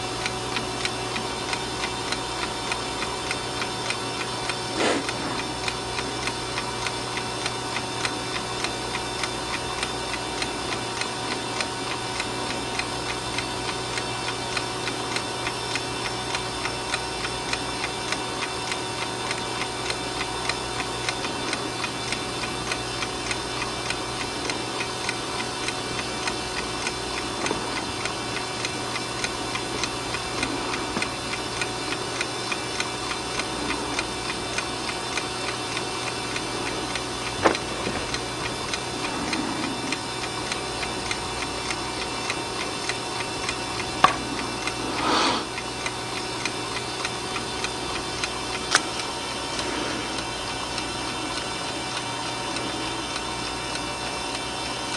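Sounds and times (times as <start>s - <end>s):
clock ticking: 0.0s - 54.4s.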